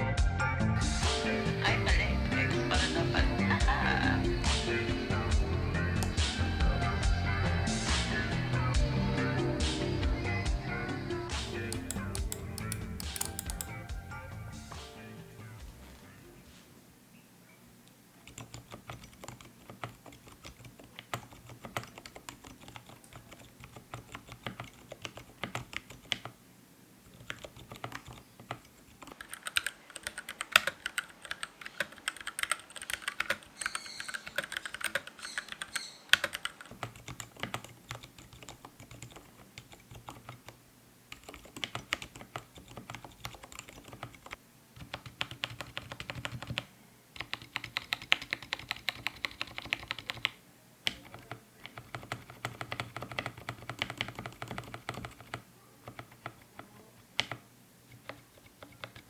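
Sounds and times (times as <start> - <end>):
mechanical keyboard key clicks: 11.5 - 13.8.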